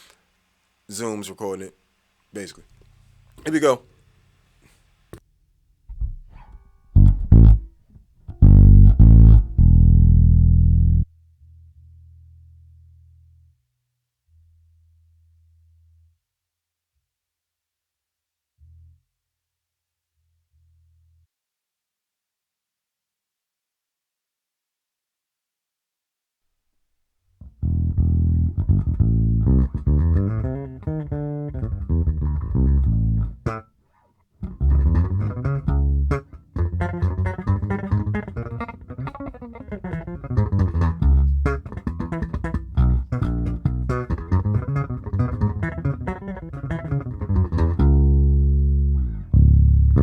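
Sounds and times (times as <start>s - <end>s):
electric bass plucked notes: 5.9s - 13.1s, 27.4s - 33.6s, 34.4s - 50.0s.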